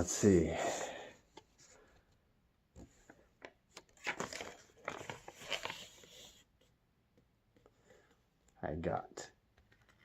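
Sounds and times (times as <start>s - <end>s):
packaging rustling and crinkling: 4.0s - 6.1s.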